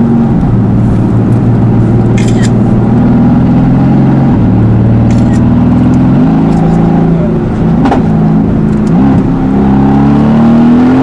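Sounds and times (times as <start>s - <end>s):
car engine running loud: 0.0s - 11.0s
sharp click: 2.1s - 2.6s, 5.1s - 6.7s.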